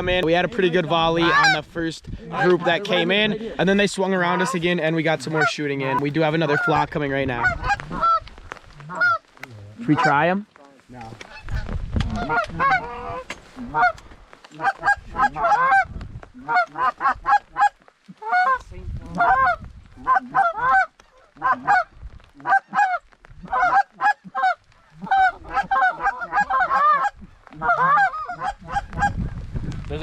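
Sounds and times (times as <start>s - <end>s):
low rumbles: 0.0s - 22.5s
geese honking: 0.6s - 1.7s, 2.3s - 3.4s, 4.2s - 10.3s, 11.2s - 14.0s, 14.6s - 18.6s, 19.2s - 29.2s.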